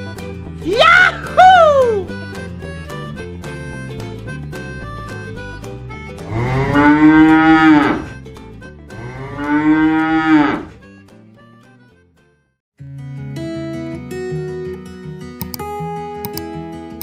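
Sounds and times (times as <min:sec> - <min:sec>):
background music: 0:00.0 - 0:17.0
cow mooing: 0:06.2 - 0:08.2, 0:08.9 - 0:10.8.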